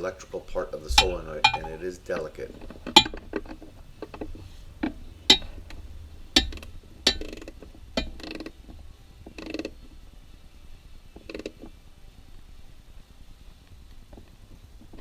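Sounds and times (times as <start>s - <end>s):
metallic clinks and knocks: 0.6s - 7.4s, 8.0s - 8.2s
ratchet clicking: 0.9s - 7.4s.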